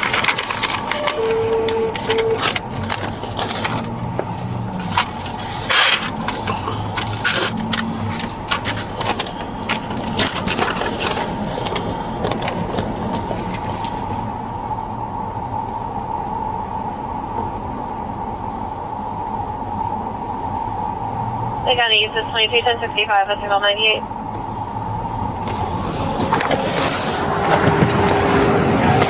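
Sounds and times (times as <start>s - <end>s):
rustling and clicking handling noise: 0.0s - 14.1s, 25.4s - 29.0s
steady hum: 0.0s - 29.0s.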